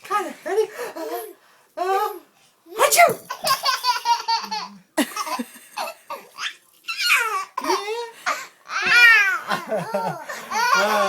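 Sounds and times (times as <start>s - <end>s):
baby belly-laughing: 3.3s - 8.0s, 8.7s - 11.0s.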